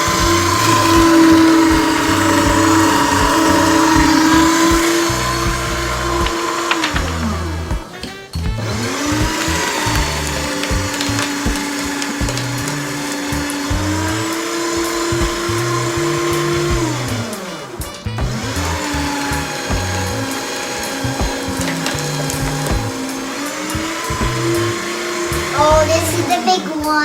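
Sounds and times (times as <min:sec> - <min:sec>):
small electric motor running: 0:00.0 - 0:26.6
background music with bass: 0:00.0 - 0:27.0.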